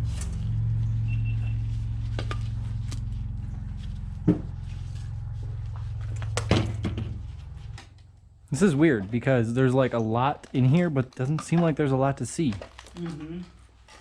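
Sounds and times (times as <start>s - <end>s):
low droning background music: 0.0s - 8.6s.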